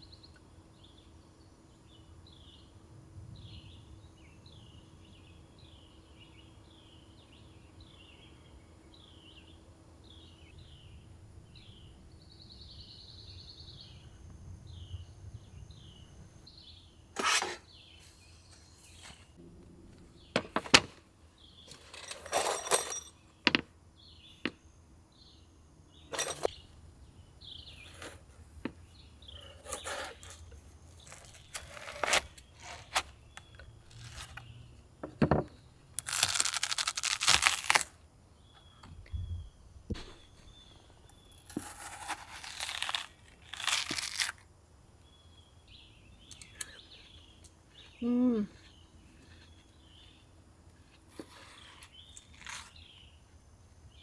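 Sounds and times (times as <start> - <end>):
bird chirping: 3.3 - 19.4, 38.3 - 42.8, 45.0 - 50.4
scraping of things being handled: 17.2 - 19.4, 21.7 - 23.2, 26.1 - 26.6, 29.3 - 34.7.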